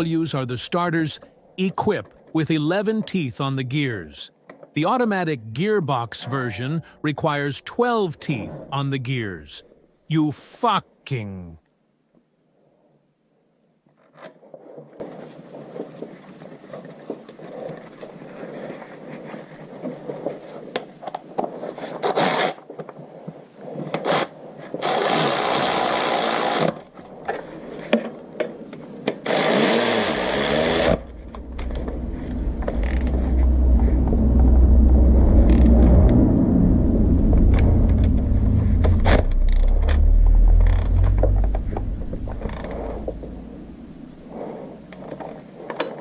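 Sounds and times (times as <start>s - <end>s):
car engine rumble: 30.2s - 44.9s.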